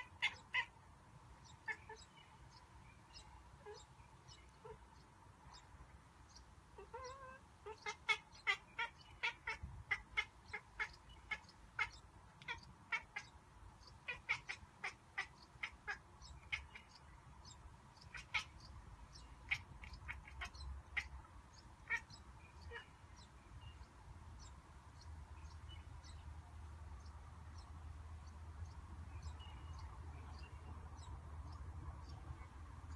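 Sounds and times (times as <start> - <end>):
cat chattering chirps: 0.0 - 0.7, 1.6 - 2.2, 3.6 - 4.8, 6.8 - 13.3, 14.0 - 17.0, 18.0 - 21.2, 21.8 - 22.9.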